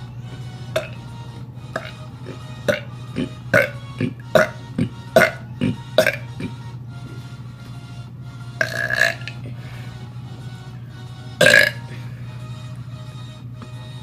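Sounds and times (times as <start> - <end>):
steady low hum: 0.0 - 14.0
boy burping: 1.8 - 2.0, 2.7 - 6.6, 8.6 - 9.3, 11.4 - 11.9.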